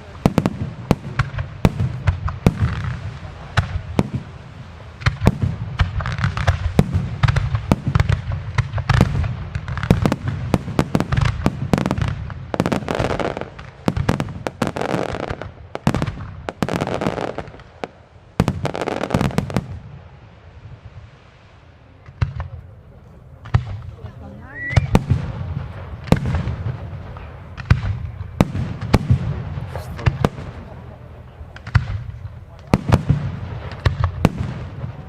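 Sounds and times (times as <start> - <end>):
fireworks bangs: 0.0 - 35.0.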